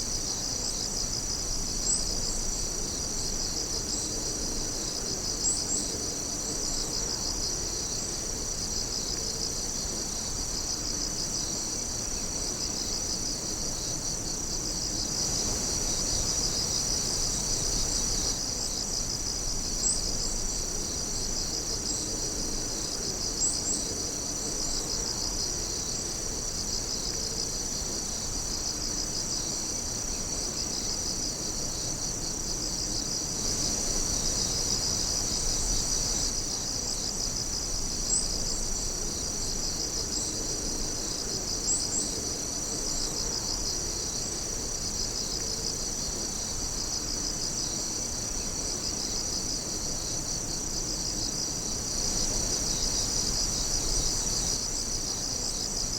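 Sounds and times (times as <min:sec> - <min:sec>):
insects trilling: 0:00.0 - 0:55.9
sharp insect chirps: 0:51.1 - 0:55.9.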